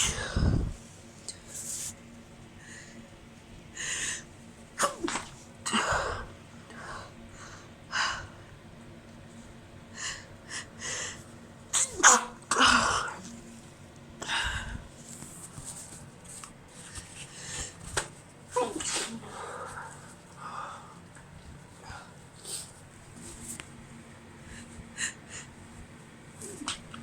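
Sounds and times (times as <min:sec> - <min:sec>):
woman sneezing: 0:11.8 - 0:13.3, 0:18.5 - 0:19.3
quick breaths: 0:16.8 - 0:17.9.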